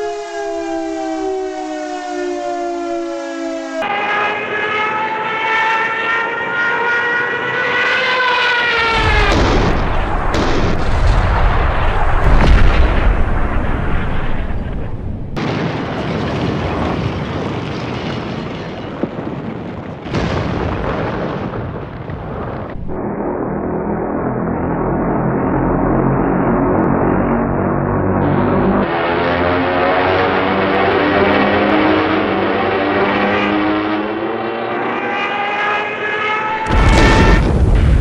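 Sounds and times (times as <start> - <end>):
rising pitched wail: 0.0 - 15.0, 22.8 - 38.0
explosions: 8.7 - 23.3, 36.6 - 38.0
gunfire: 8.9 - 19.0, 36.6 - 38.0.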